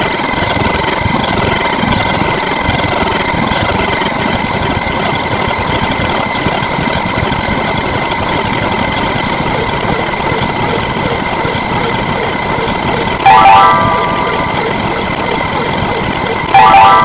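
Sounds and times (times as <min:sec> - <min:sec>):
high-pitched whine: 0:00.0 - 0:17.0.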